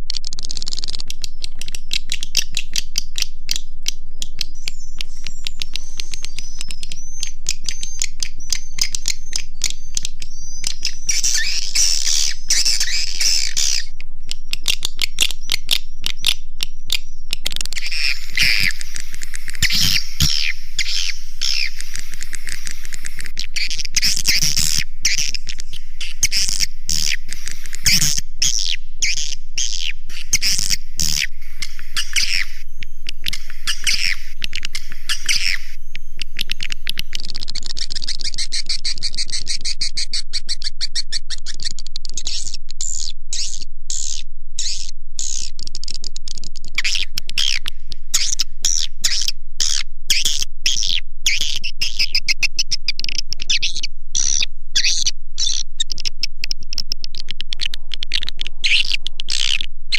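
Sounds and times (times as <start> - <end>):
rapid dry clicks: 0.0 - 28.2, 55.4 - 59.7
swiftlet chirping and twittering: 0.4 - 45.5, 46.8 - 59.7.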